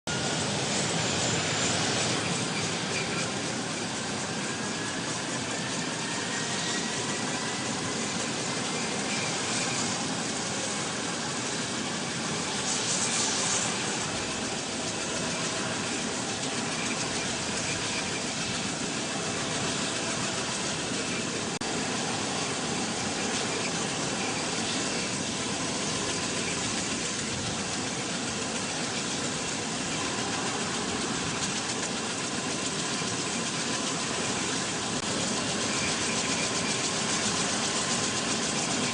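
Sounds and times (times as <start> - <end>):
aircraft engines and rotors running: 0.0 - 38.9
faint engine whine: 0.1 - 38.9.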